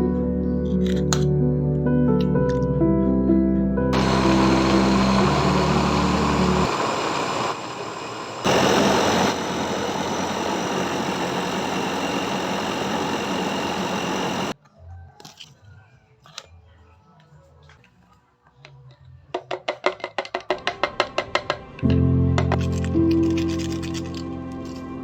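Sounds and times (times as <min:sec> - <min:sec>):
background music: 0:00.0 - 0:06.7, 0:20.6 - 0:25.0
small electric motor whirring: 0:04.0 - 0:14.6.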